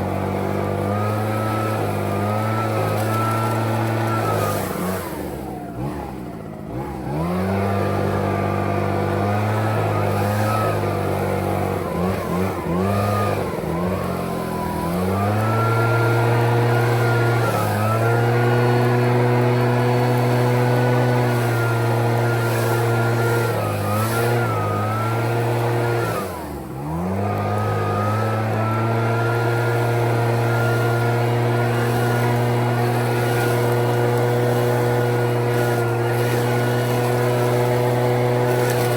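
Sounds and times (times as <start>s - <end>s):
leaf blower engine revving: 0.0s - 38.9s.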